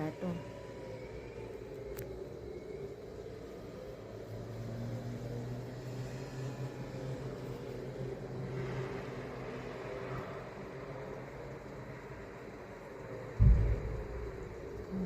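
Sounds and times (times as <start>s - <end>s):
distant wailing warning siren: 0.0s - 15.0s
low steady hum: 7.1s - 15.0s.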